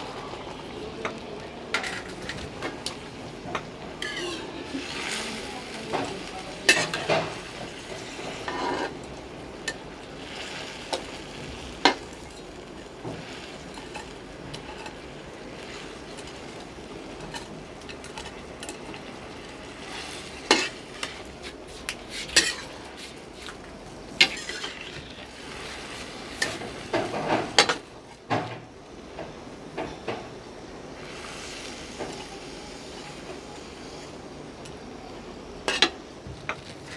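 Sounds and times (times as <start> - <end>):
hiss of cooking: 0.0 - 36.9
spoon scraping a pan: 4.0 - 9.0, 13.2 - 16.4, 19.8 - 23.6, 24.2 - 27.8.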